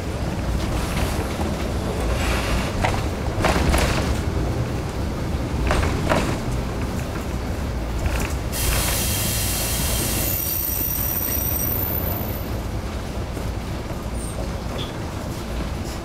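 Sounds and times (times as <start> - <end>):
diesel railcar rumbling: 0.0 - 16.0
loud hiss: 8.6 - 11.1.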